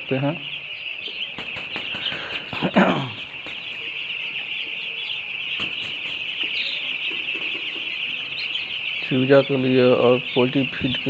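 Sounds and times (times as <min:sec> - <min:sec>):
chicks peeping and chirping: 0:00.0 - 0:11.0.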